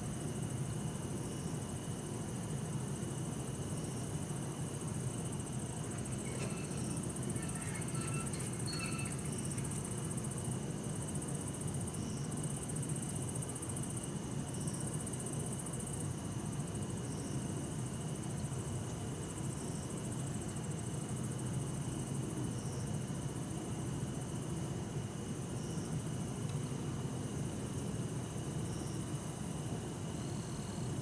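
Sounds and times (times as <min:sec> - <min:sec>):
night insects trilling: 0:00.0 - 0:31.0
short insect chirps: 0:05.6 - 0:10.5.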